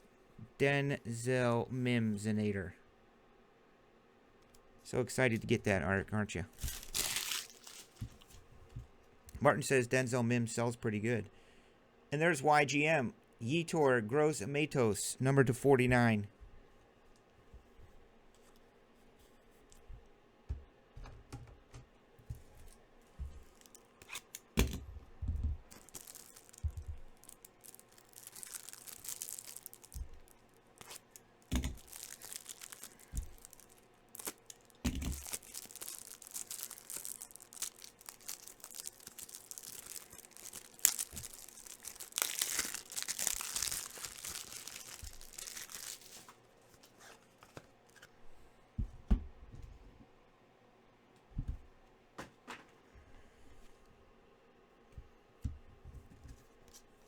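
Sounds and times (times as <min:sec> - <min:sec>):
packaging tearing and crinkling: 0:06.5 - 0:08.4, 0:23.5 - 0:24.5, 0:25.7 - 0:46.4.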